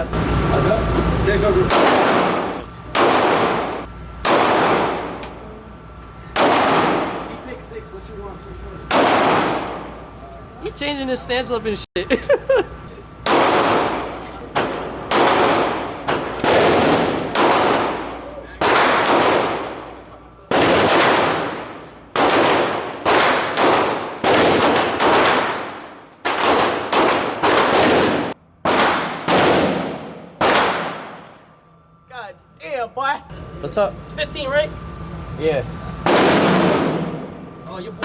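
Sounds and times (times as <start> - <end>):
rifle shots echoing: 1.7 - 5.2, 6.4 - 7.4, 8.9 - 9.9, 13.2 - 19.9, 20.5 - 31.4, 36.0 - 37.6.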